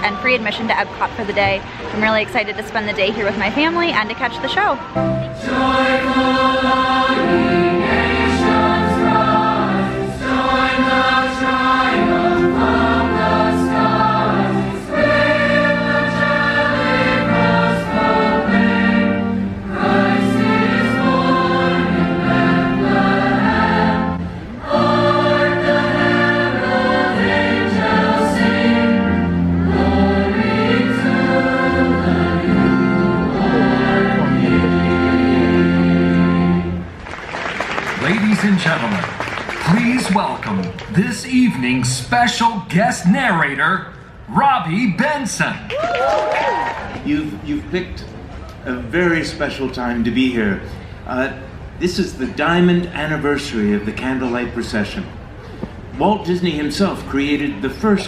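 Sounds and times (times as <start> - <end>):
orchestral accompaniment: 3.0 - 37.2
choir singing a carol: 4.9 - 36.9.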